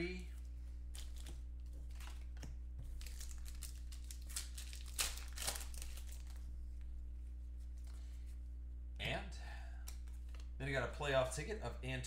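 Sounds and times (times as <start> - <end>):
cards being handled: 0.3 - 6.8, 9.8 - 10.6
card pack wrapper crinkling: 0.9 - 6.4.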